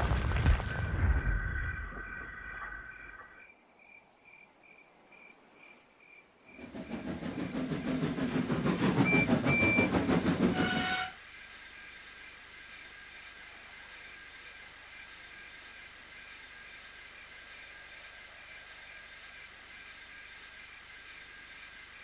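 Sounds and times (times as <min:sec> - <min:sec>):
steam locomotive chuffing: 0:06.4 - 0:11.2
train whistle: 0:09.0 - 0:11.2
short high peeps: 0:10.5 - 0:11.2.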